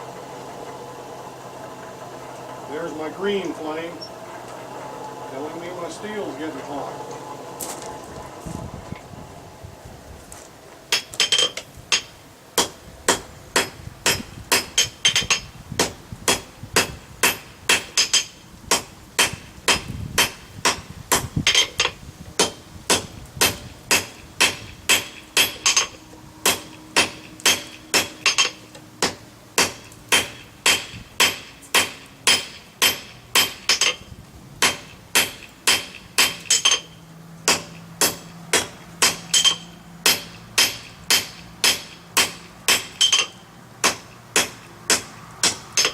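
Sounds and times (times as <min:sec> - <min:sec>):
hammer striking steel on anvil: 0:10.9 - 0:21.8, 0:22.4 - 0:34.0, 0:34.6 - 0:36.9, 0:37.5 - 0:45.9.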